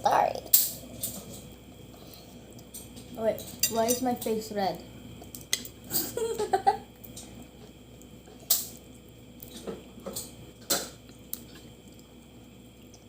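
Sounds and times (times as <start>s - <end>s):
crab shell cracking: 5.2s - 5.8s, 7.0s - 12.2s.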